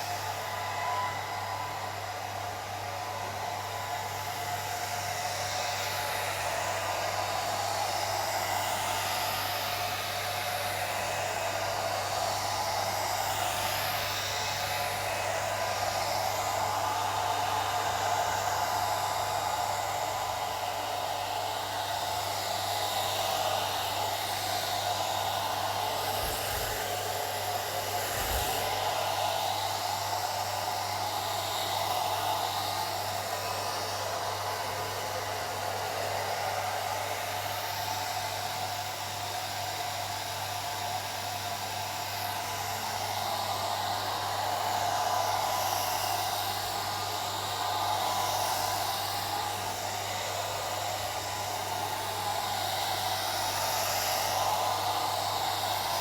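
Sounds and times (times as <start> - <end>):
hair dryer running: 0.0 - 56.0.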